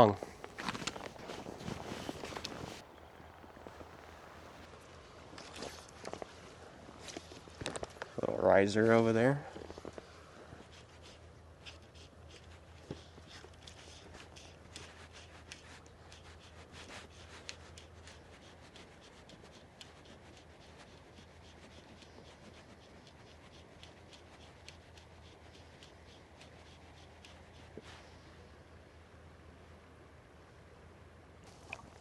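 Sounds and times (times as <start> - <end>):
scratchy rubbing with clicks: 0.0 - 4.7
low steady hum: 0.0 - 6.0, 27.0 - 32.0.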